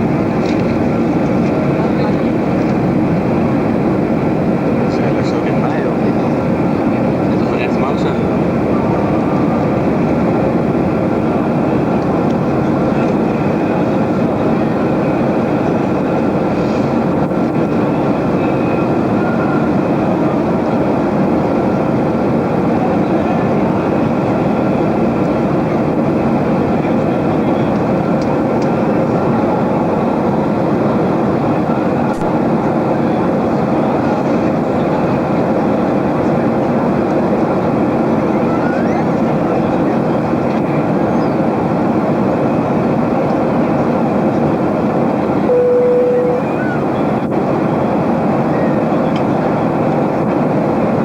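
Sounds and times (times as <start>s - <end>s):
jet cabin engine and airflow noise: 0.0s - 51.0s
faint hum: 45.4s - 47.4s.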